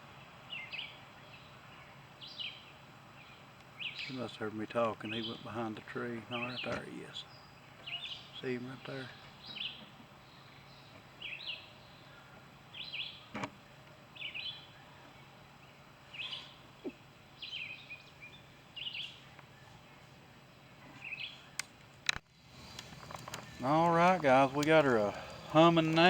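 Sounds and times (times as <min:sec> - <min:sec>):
bird chirping: 0:22.4 - 0:26.0.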